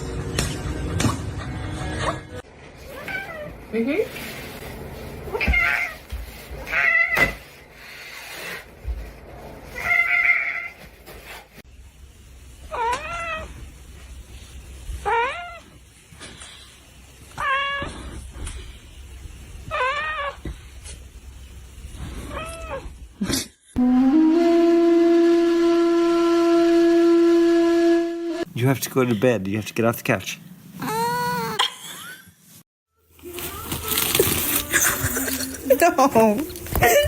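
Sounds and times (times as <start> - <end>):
cat meowing: 15.0 - 15.7.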